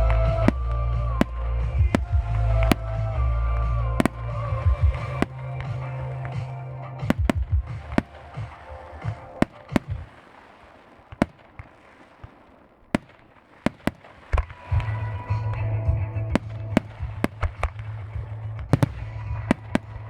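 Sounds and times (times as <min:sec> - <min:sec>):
music with heavy bass beat: 0:00.0 - 0:09.9
firework shells bursting: 0:00.0 - 0:20.0.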